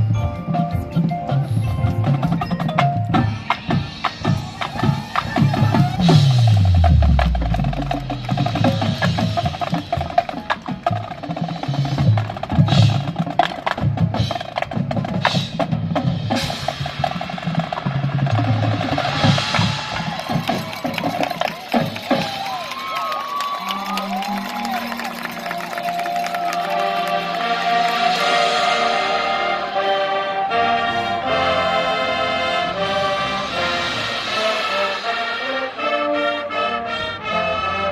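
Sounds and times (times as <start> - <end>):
bass drum: 3.1 - 10.1
snare drum: 3.4 - 23.4.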